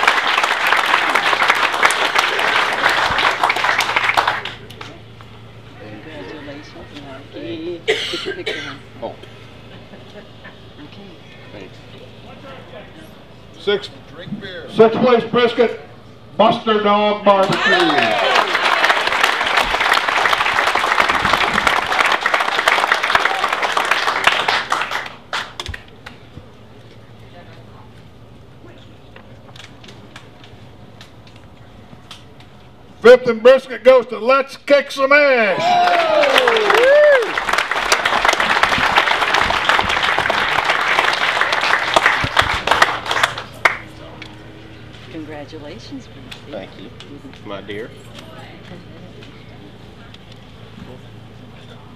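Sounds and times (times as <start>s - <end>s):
crowd applauding: 0.0s - 5.0s, 17.4s - 25.8s, 35.6s - 44.0s.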